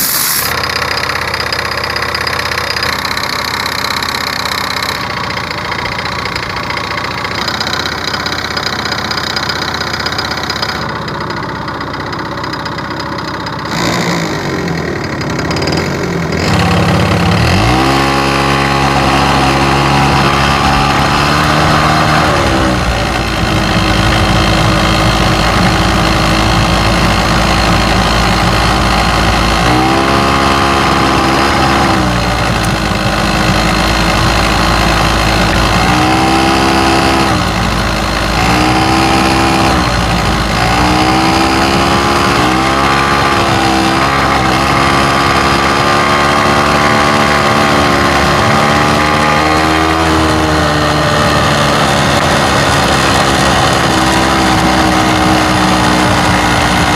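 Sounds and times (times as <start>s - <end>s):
scooter engine revving and idling: 0.0s - 56.9s.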